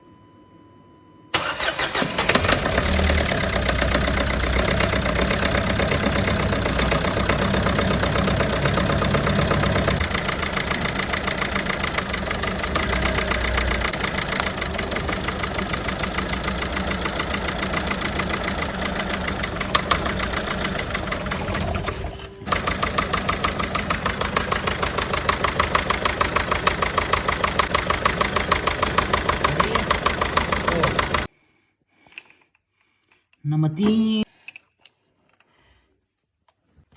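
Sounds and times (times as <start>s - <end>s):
diesel engine knocking: 2.3s - 31.3s.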